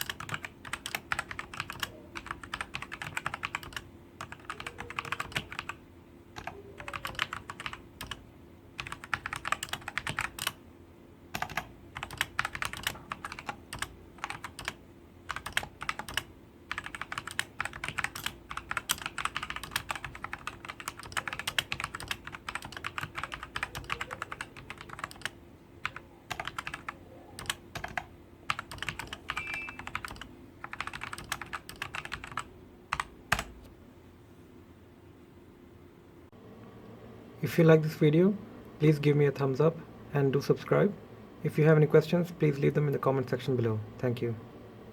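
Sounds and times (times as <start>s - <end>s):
mechanical keyboard typing: 0.0s - 5.8s, 6.4s - 8.2s, 8.8s - 10.6s, 11.3s - 33.6s
faint steady hum: 0.0s - 44.9s.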